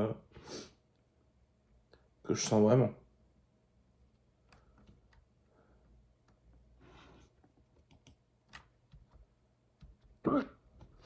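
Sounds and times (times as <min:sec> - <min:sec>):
soft breath: 0:04.5 - 0:07.5
keyboard typing clicks: 0:07.8 - 0:10.2.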